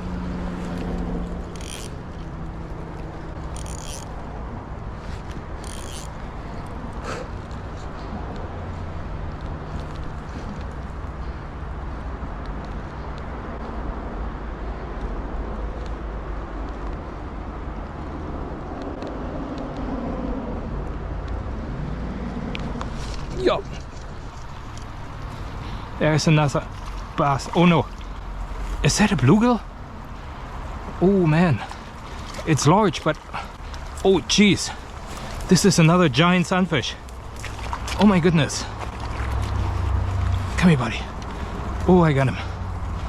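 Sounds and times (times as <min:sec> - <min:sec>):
vehicle passing: 0:00.0 - 0:12.3, 0:18.1 - 0:43.0
road traffic rumble: 0:00.0 - 0:43.0.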